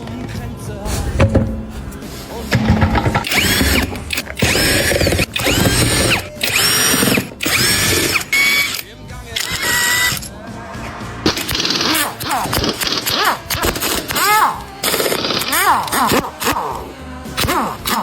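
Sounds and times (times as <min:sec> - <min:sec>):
power wrench whine: 0:01.1 - 0:10.3, 0:11.3 - 0:18.0.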